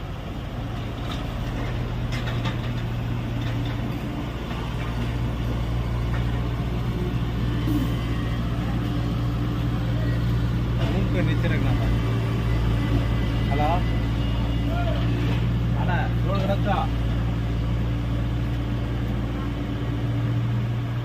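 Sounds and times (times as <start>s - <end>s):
excavator diesel engine running: 0.0s - 21.0s
faint clanks: 1.0s - 5.2s.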